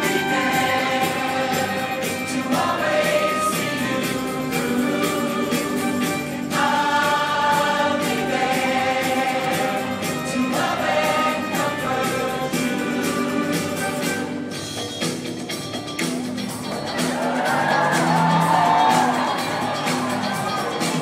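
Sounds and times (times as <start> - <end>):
group singing in chorus: 0.0 - 14.5
musical backing: 0.0 - 21.0.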